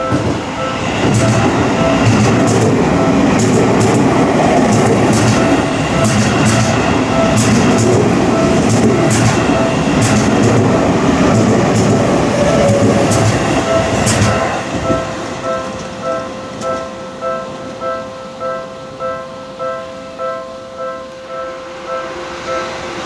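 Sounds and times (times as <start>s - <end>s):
wheels clacking over rail joints: 0.0s - 18.0s
crossing warning bell: 0.0s - 23.0s
train rumbling past: 0.0s - 23.0s.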